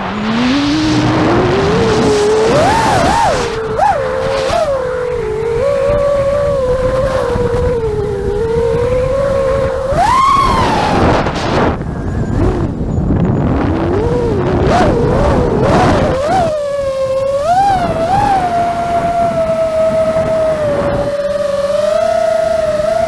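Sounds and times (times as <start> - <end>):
drone propellers whining: 0.0 - 23.0
wind rumbling on microphone: 0.0 - 23.0.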